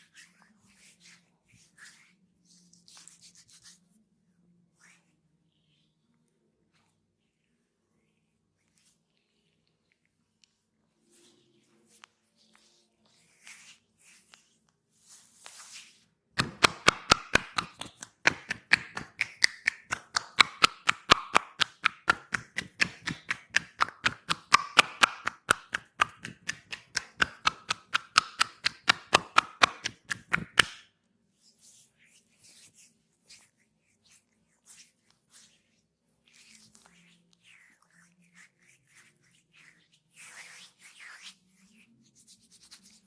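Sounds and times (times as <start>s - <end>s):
hands slapping body: 16.4s - 30.8s.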